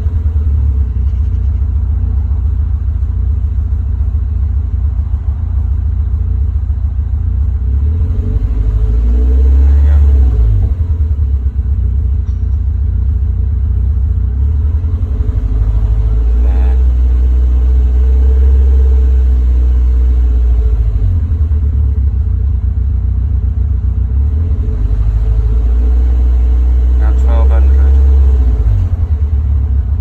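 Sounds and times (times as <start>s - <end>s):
car engine idling roughly: 0.0s - 8.3s, 9.5s - 30.0s.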